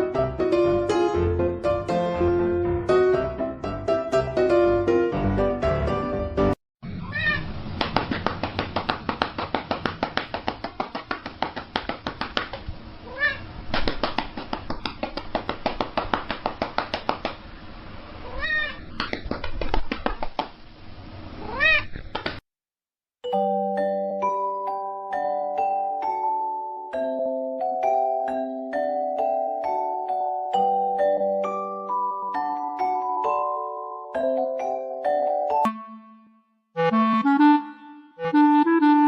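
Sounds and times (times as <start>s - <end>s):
cat meowing: 6.9s - 7.5s, 13.0s - 13.5s, 18.2s - 18.9s, 21.4s - 21.9s.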